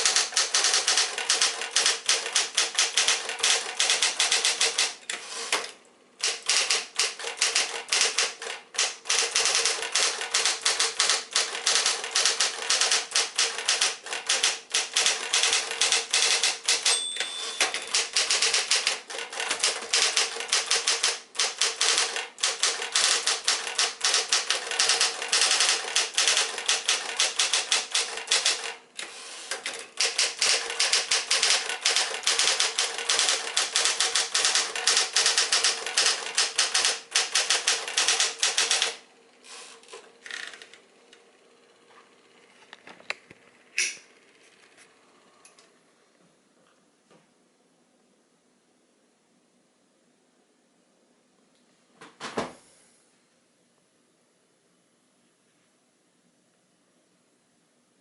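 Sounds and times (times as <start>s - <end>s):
typewriter keystrokes: 0.0s - 39.0s
typewriter motor hum: 0.0s - 40.8s
typewriter margin bell ring: 13.6s - 18.8s.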